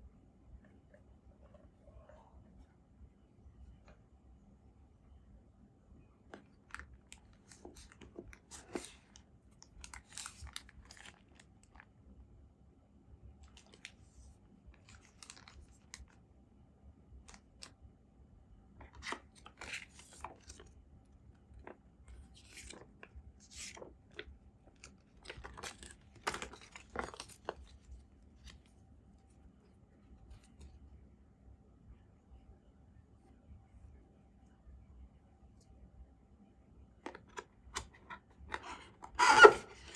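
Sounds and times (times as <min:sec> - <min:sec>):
packaging rustling and tearing: 0:21.6 - 0:28.5.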